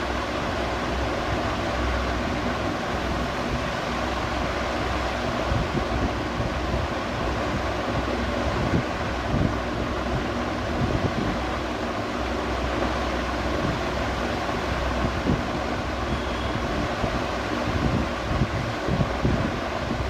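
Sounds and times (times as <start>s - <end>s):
air buffeting microphone: 0.0s - 20.0s
ceiling fan air rushing: 0.0s - 20.0s
low constant hum: 0.0s - 20.0s.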